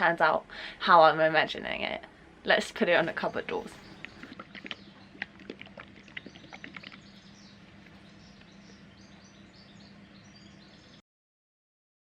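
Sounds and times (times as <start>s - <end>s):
low steady hum: 0.0s - 11.0s
small birds chirping: 2.8s - 11.0s.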